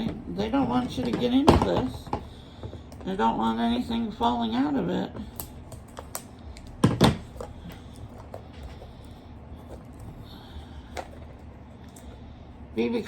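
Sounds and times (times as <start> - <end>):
package rustling and clicking: 5.2 - 10.2.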